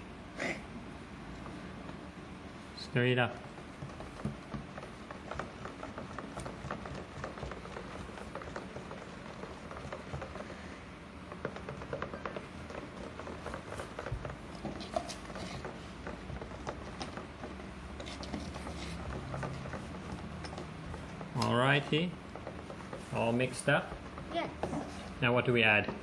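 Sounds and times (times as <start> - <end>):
paste stirred in a container: 0.8 - 26.0.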